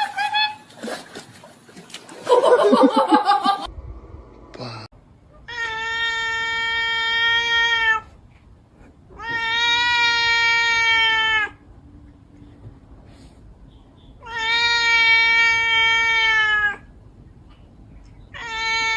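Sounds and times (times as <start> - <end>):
cat meowing: 5.4 - 8.1, 9.2 - 11.6, 14.2 - 16.9, 18.3 - 18.9.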